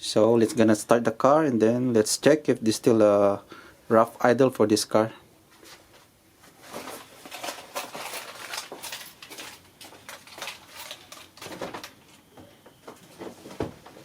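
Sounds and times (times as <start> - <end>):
handling clicks and rustling: 6.5 - 12.3.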